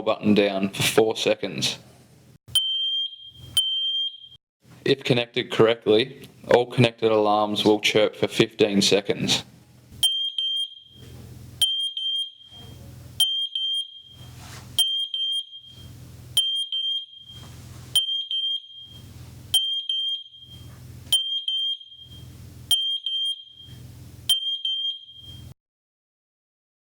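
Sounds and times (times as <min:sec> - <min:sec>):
smoke alarms beeping high-pitched: 0:02.5 - 0:04.4, 0:10.0 - 0:25.6.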